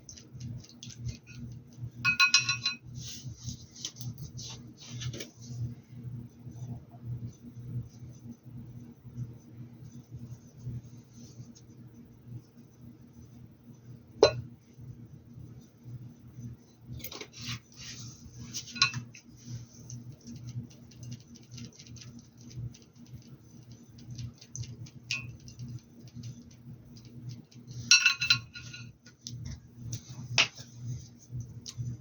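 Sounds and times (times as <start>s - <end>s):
tools tapping on glassware: 2.1s - 2.8s.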